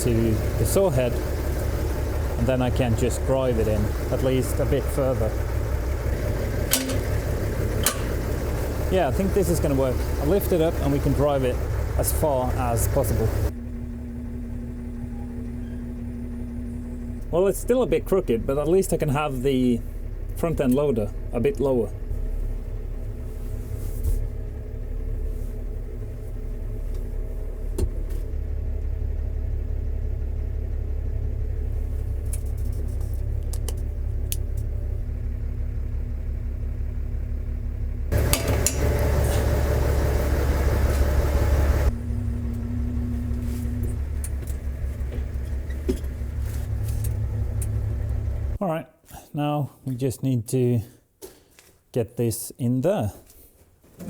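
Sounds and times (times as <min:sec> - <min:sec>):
tractor diesel engine running: 0:00.0 - 0:48.6
sharp metal clanks: 0:06.6 - 0:08.4, 0:38.1 - 0:39.5.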